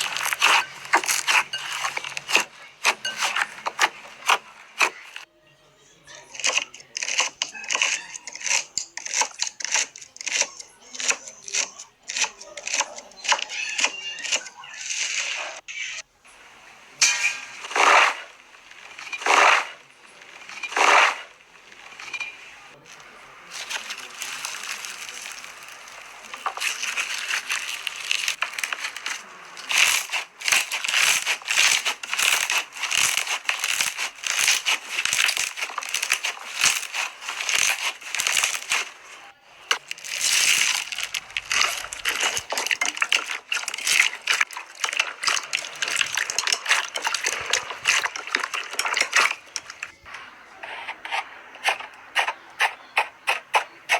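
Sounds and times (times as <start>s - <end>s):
slime squelching: 0.0s - 5.3s, 6.1s - 53.9s.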